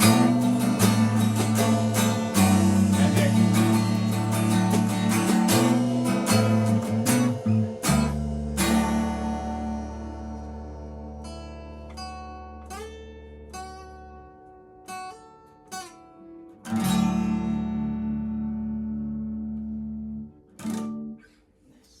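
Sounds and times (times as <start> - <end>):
electric guitar notes and chords: 0.0 - 14.1
bass guitar: 0.0 - 14.9, 16.7 - 21.0.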